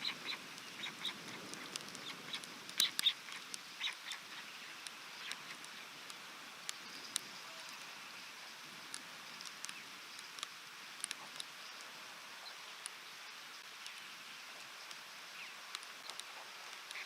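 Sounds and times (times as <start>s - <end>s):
steady rain hiss: 0.0s - 17.0s
raindrops tapping near microphone: 0.1s - 7.9s.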